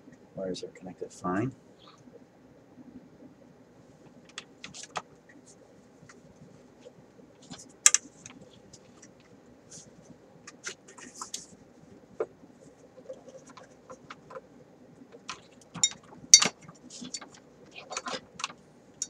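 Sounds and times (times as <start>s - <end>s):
handling wires and small parts: 15.1s - 18.6s.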